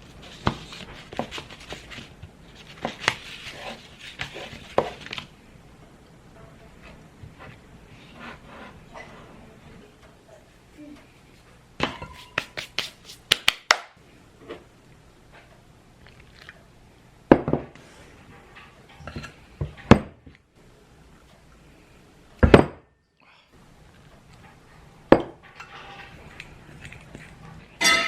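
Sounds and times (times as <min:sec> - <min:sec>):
dishes and utensils clinking: 0:11.8 - 0:12.4, 0:18.3 - 0:20.0, 0:25.1 - 0:28.0.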